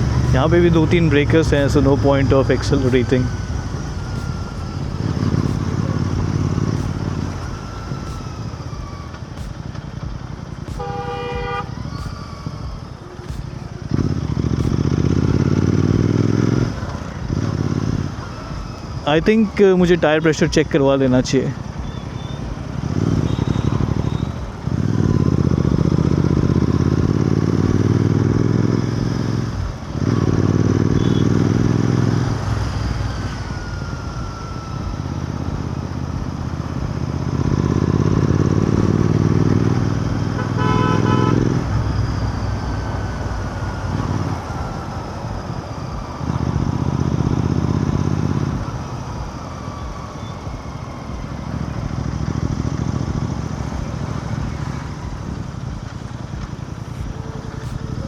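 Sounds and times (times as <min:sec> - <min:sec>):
motorcycle engine surging: 0:00.0 - 0:58.0
vehicle horn: 0:10.6 - 0:11.9, 0:22.2 - 0:24.4, 0:30.4 - 0:31.9, 0:40.2 - 0:41.9.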